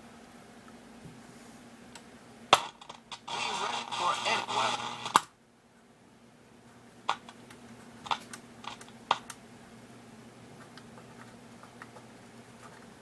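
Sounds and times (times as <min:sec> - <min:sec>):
faint radio hum: 0:02.6 - 0:05.3.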